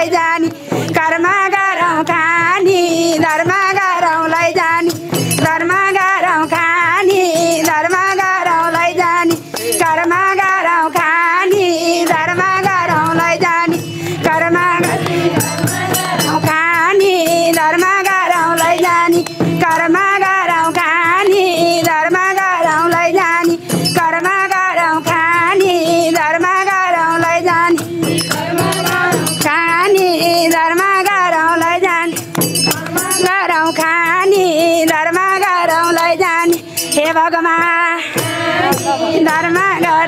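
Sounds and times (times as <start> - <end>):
hand drum and jingling percussion: 0.0 - 40.0.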